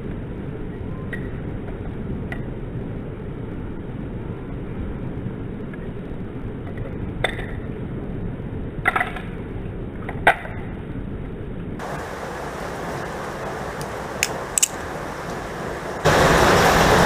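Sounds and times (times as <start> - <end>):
background hiss: 11.8 - 17.0
butterfly knife clicking: 13.8 - 14.8.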